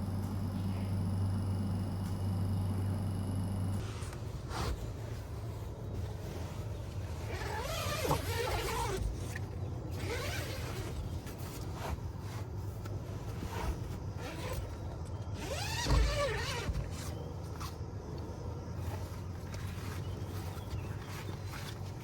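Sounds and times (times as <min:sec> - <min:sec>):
vehicle engine rumble: 0:00.0 - 0:22.0.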